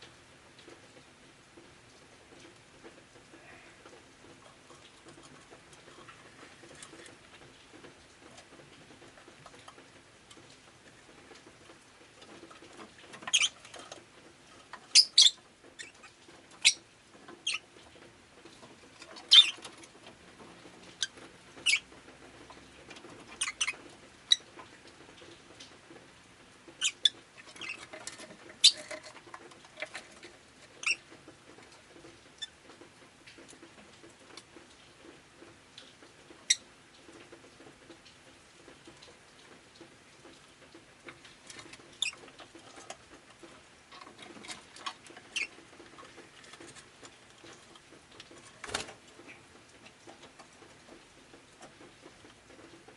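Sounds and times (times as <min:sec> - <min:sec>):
lovebird chirping: 0:13.3 - 0:13.6, 0:14.9 - 0:16.8, 0:17.4 - 0:17.6, 0:19.3 - 0:19.6, 0:28.6 - 0:28.9.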